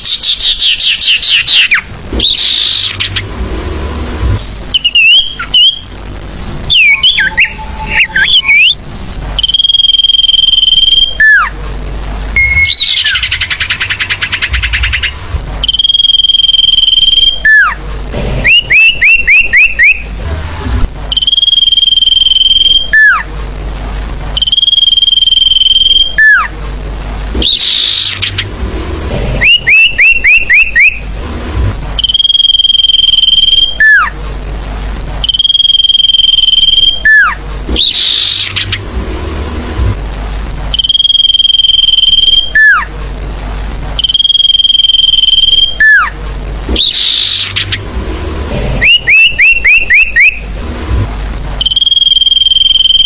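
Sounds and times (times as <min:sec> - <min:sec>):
rising chirps: 0:00.0 - 0:06.0, 0:06.7 - 0:08.8, 0:09.4 - 0:11.6, 0:12.4 - 0:17.8, 0:27.4 - 0:31.2, 0:32.0 - 0:34.1, 0:35.2 - 0:39.6, 0:40.7 - 0:42.9, 0:44.0 - 0:46.1, 0:46.7 - 0:50.6, 0:51.6 - 0:53.0
steady low hiss: 0:00.0 - 0:53.0
high whistle with downward slur: 0:51.6 - 0:53.0.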